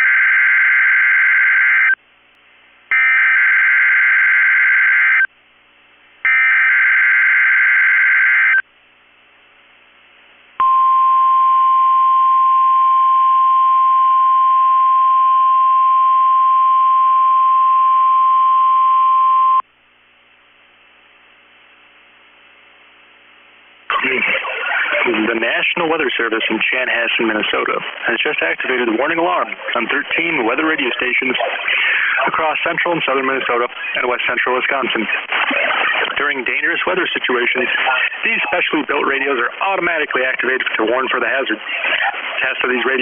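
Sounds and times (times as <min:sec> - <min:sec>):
warning alarm tone: 0:02.9 - 0:05.3, 0:06.3 - 0:08.6.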